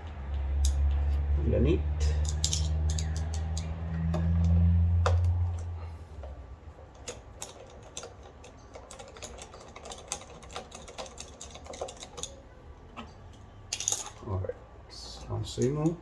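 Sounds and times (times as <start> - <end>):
clicks of hand tools and bolts: 0.0 - 1.3, 2.0 - 12.4, 13.0 - 14.3
low hum: 0.0 - 6.5.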